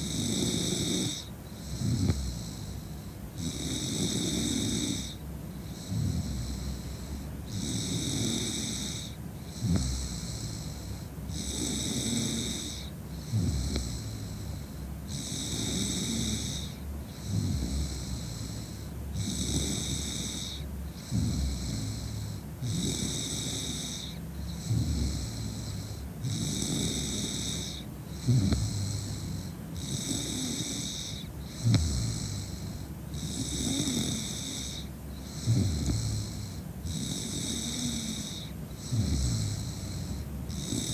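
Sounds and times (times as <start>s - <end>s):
woman snoring: 0.0s - 2.8s, 3.4s - 40.9s.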